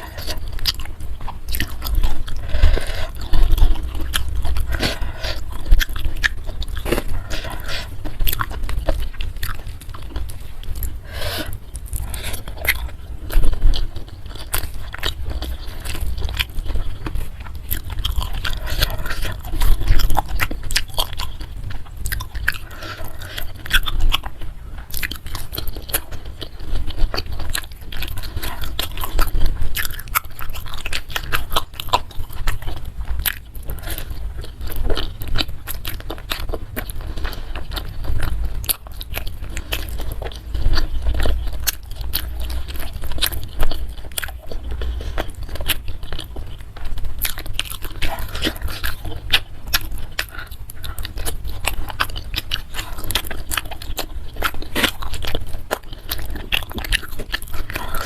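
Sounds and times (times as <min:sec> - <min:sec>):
chewing and crunching food: 0:00.0 - 0:58.0.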